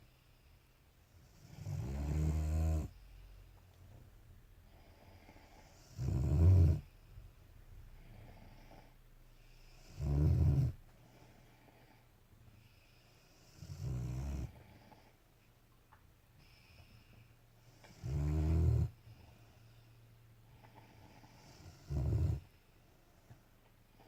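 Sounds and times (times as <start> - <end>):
dog snoring: 1.1 - 3.0, 4.7 - 7.1, 7.8 - 12.0, 12.7 - 15.2, 17.6 - 19.6, 20.5 - 22.6
soft breathing: 2.8 - 6.0, 6.8 - 10.0, 10.7 - 13.8, 16.3 - 24.0.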